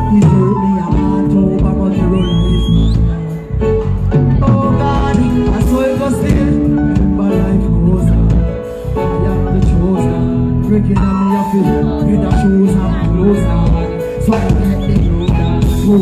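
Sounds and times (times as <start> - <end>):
live dancehall music: 0.0 - 16.0
person singing: 0.0 - 16.0.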